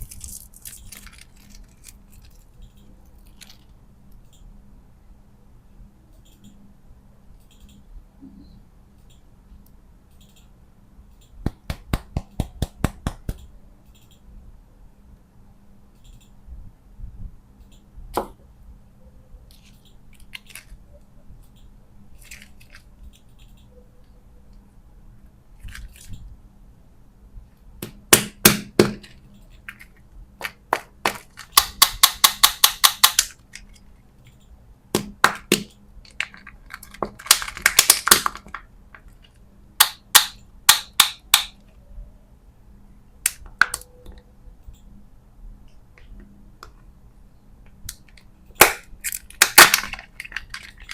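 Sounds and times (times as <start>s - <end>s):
plastic candy packaging snapping: 0.0s - 2.4s, 35.0s - 38.6s, 48.6s - 50.9s.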